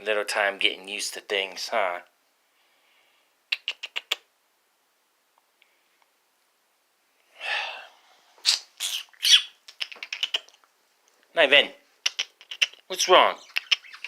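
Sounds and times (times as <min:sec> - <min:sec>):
harsh scratchy bird call: 0:08.4 - 0:10.5, 0:12.0 - 0:14.0
short sharp bird chirps: 0:08.4 - 0:10.5, 0:13.4 - 0:14.0.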